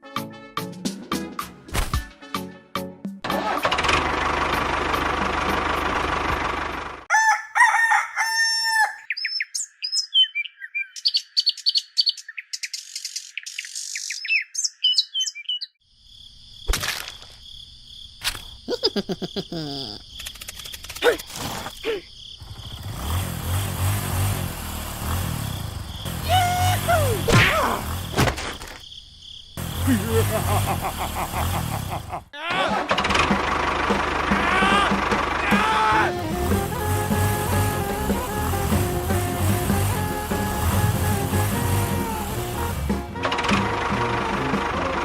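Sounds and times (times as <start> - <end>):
chicken-like bird calls: 7.1 - 9.3
high bird chirping: 8.8 - 15.8.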